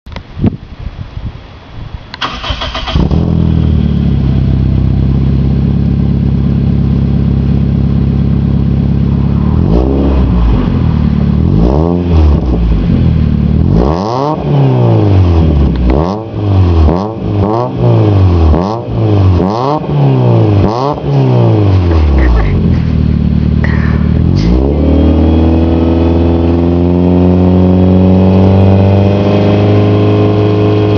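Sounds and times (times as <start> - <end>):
car engine idling and revving: 2.2 - 30.9.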